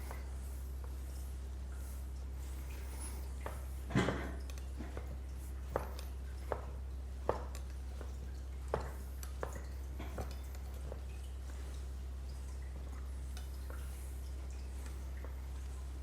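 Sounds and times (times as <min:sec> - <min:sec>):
steady low hum: 0:00.0 - 0:16.0
soft taps of hands on body: 0:04.5 - 0:11.1.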